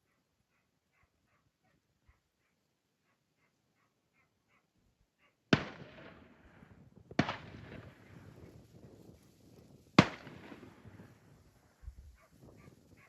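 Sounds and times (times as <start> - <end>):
gunshots with rolling echo: 5.5 - 11.8.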